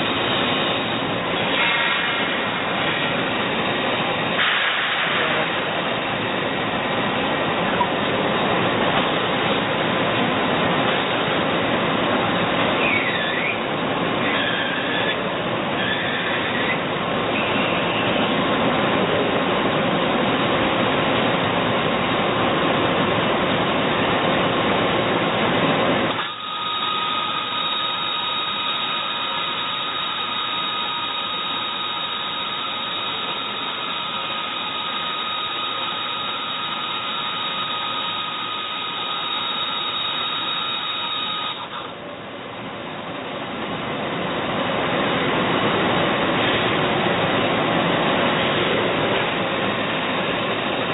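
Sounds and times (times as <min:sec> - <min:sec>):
machine high whine: 0:00.0 - 0:21.1, 0:21.7 - 0:42.2
lathe machine hiss: 0:04.2 - 0:05.8, 0:26.1 - 0:41.9.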